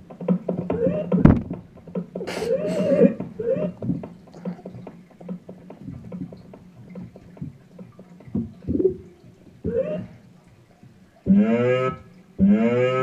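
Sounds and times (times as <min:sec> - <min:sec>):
keyboard animal-like cries: 0:02.3 - 0:03.8.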